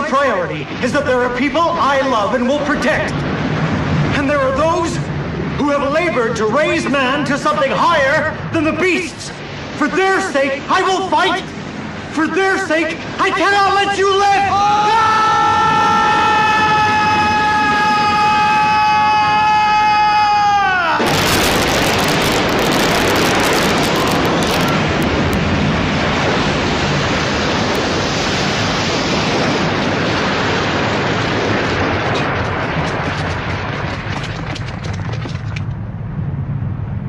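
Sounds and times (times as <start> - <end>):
descending tone: 21.0 - 25.6
explosion blast with crackling: 21.0 - 37.0.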